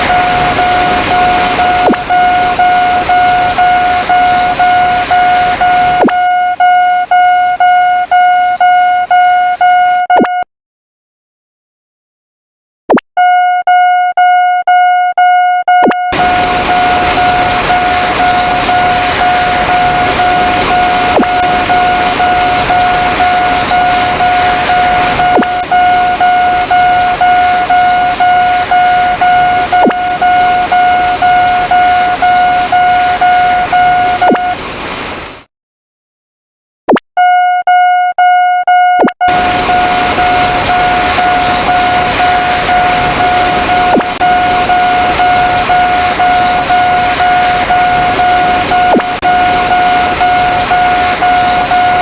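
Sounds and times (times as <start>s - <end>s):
steady rushing noise: 0.0s - 6.8s, 16.1s - 35.5s, 39.3s - 52.0s.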